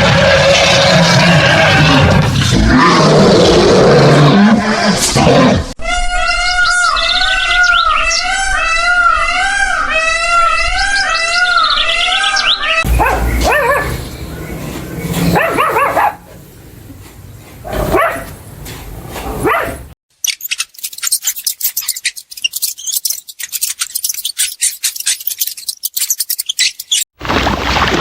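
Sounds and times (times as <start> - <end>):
dog barking and whining: 12.8 - 14.2, 15.1 - 16.4, 17.6 - 18.4, 19.2 - 20.0.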